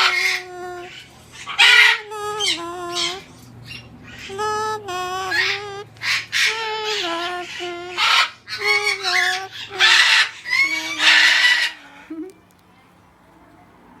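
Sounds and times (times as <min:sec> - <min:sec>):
parrot screeching: 0:00.0 - 0:04.6, 0:05.3 - 0:12.1
parrot calling: 0:00.0 - 0:12.5.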